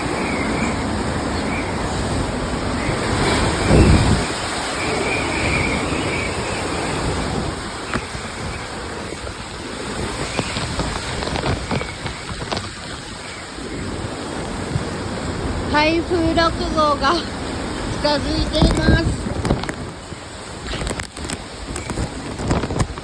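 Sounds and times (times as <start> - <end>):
strong wind buffeting microphone: 0.0 - 23.0.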